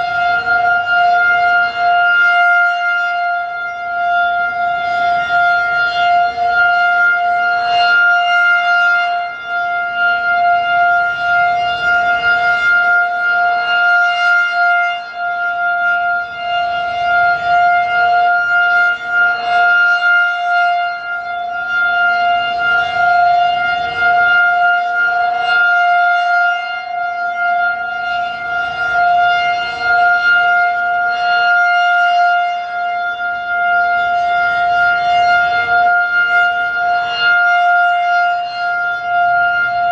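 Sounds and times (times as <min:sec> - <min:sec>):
rotating siren steady tone: 0:00.0 - 0:39.9.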